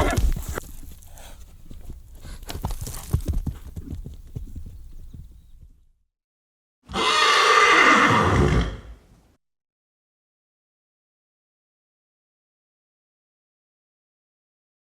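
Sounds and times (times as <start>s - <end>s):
hoofbeats: 0.0s - 5.9s
horse neigh: 6.9s - 9.0s.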